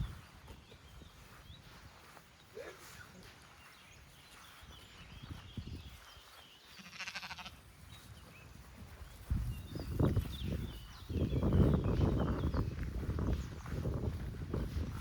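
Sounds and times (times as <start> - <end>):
small birds chirping: 0.0 - 15.0
sheep and lambs bleating: 6.7 - 7.6
soft low thuds of movement: 7.9 - 15.0.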